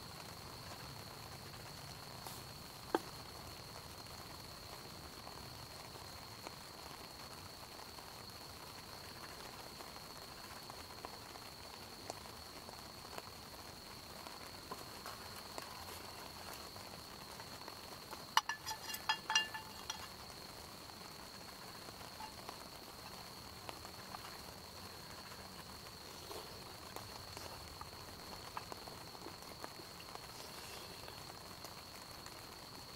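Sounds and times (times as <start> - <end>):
campfire crackling: 0.0 - 32.9
insect trill: 0.0 - 32.9
utensil clinking on cookware: 18.4 - 20.2.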